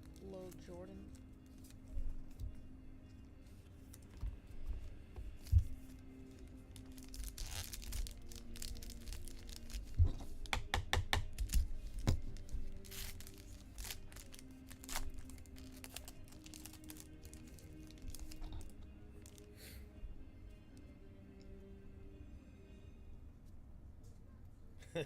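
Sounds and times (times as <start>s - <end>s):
card wrappers crinkling and tearing: 0.0s - 2.4s, 3.8s - 4.2s, 5.3s - 10.5s, 11.3s - 19.6s
background music: 0.0s - 25.0s.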